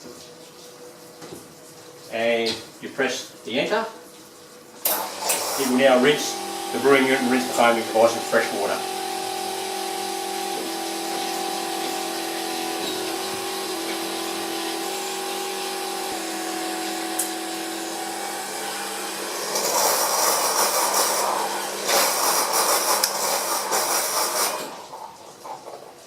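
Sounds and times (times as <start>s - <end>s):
pump humming: 4.8s - 25.0s
hissing spurts of water and steam: 4.8s - 25.2s.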